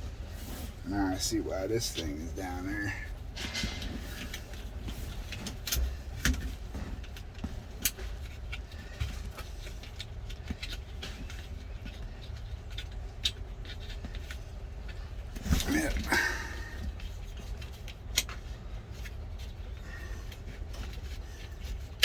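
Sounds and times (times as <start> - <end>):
low steady hum: 0.0 - 22.0
clicks and knocks of parts handled: 3.2 - 22.0.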